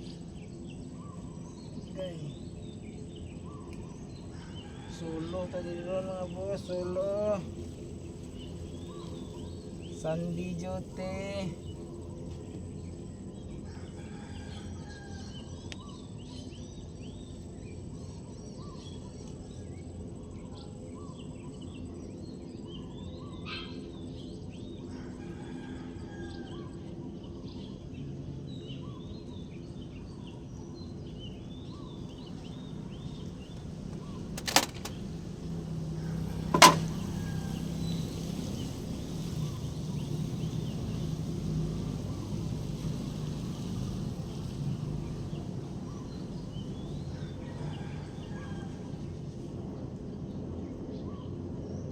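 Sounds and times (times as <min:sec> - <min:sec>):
birds chirping: 0:00.0 - 0:49.0
diesel engine running: 0:33.4 - 0:39.8
sharp bangs: 0:34.4 - 0:35.0.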